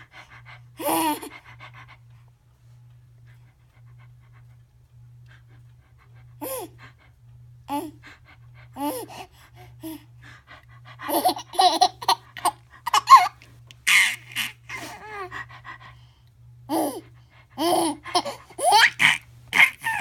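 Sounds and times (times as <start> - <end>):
funny noises: 11.0 - 15.9, 17.6 - 20.0
baby giggling: 11.1 - 15.3, 17.6 - 20.0.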